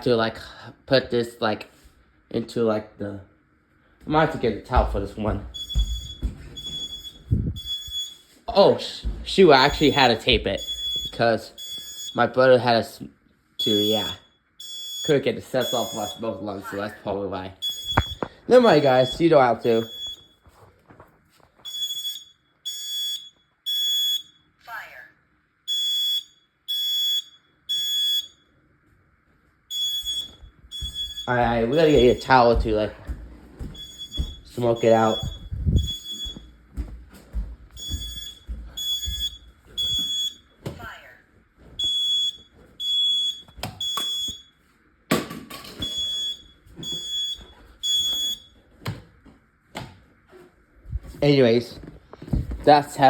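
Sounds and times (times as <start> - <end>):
smoke alarm beeps: 4.6 - 12.4, 13.6 - 17.0, 17.6 - 20.5, 21.6 - 24.6, 25.7 - 28.6, 29.7 - 36.9, 37.8 - 40.9, 41.8 - 44.6, 45.8 - 48.6.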